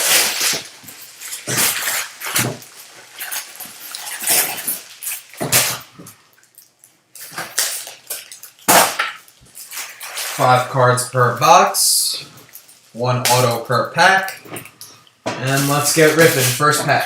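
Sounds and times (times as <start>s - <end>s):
packaging ripping: 0.0s - 10.7s, 15.5s - 17.0s
wrapper and cardboard crinkling: 0.0s - 17.0s.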